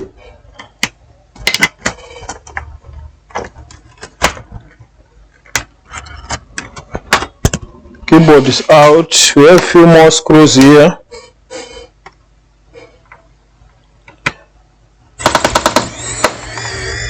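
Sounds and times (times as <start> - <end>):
plastic clips clicking and snapping: 0.6 - 2.0.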